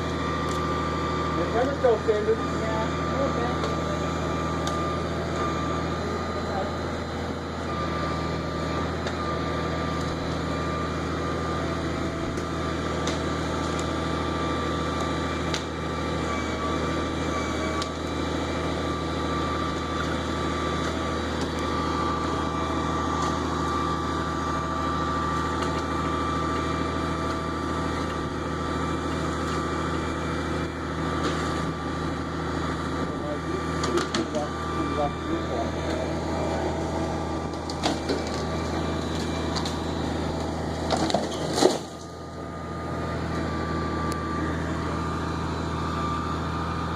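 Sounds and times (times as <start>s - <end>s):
diesel engine running: 0.0s - 46.9s.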